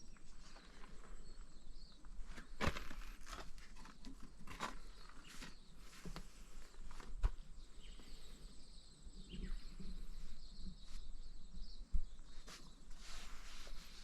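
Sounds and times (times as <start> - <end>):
faint bird chirps: 4.7 - 14.0.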